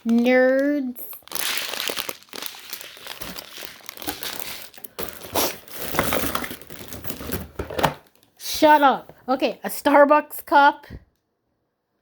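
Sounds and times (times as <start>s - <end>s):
wrappers crinkling and rustling: 0.0s - 8.8s.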